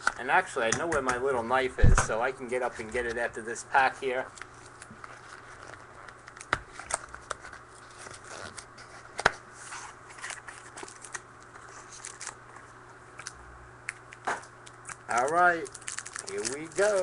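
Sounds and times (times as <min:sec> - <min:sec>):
foil wrapper crinkling: 0:09.7 - 0:13.4, 0:14.6 - 0:17.0.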